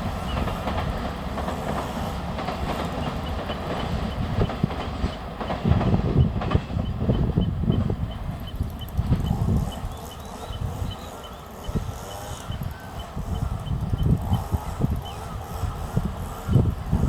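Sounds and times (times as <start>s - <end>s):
freight train rumble: 0.0s - 17.0s
wheels clicking over rail joints: 0.0s - 17.0s.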